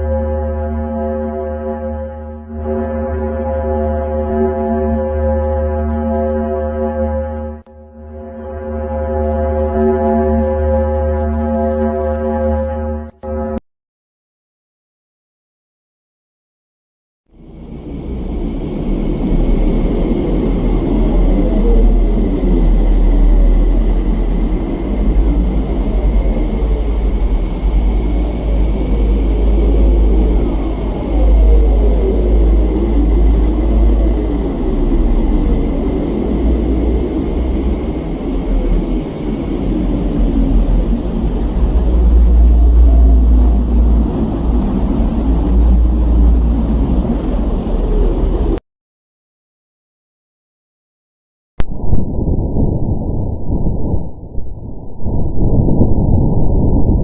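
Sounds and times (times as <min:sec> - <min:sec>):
dense grainy drone: 0:00.0 - 0:13.5, 0:17.3 - 0:48.6
deep rumble: 0:17.3 - 0:48.6, 0:51.6 - 0:57.0
swooping gliding tones: 0:17.6 - 0:48.6.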